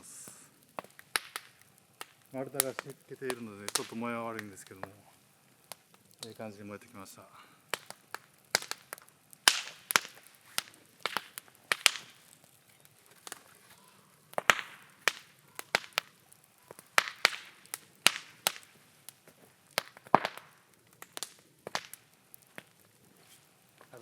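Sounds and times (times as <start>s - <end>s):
short hisses from fire: 0.0s - 0.7s
bonfire crackling: 0.0s - 24.0s
sharp pops from fire: 0.0s - 24.0s.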